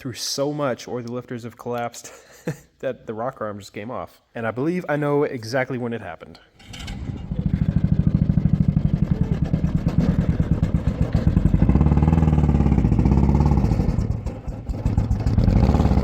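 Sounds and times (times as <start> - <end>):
pickup engine running pulsing: 6.7 - 16.0.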